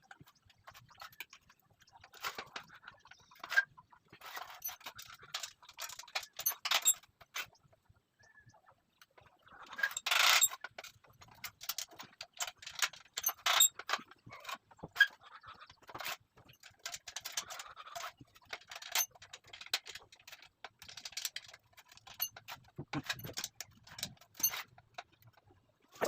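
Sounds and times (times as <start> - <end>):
metal parts clinking and rattling: 4.2 - 7.0, 9.8 - 14.6, 18.4 - 25.4.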